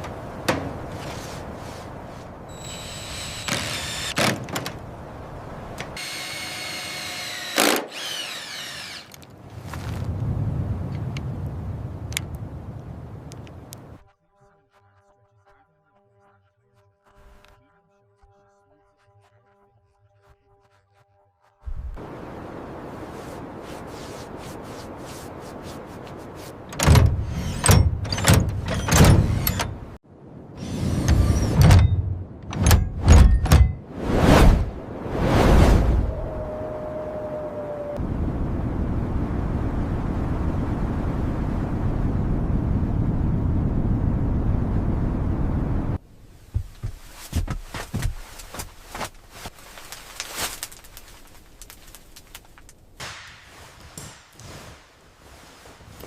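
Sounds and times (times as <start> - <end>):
power drill whining: 2.5 - 4.2, 6.0 - 9.2.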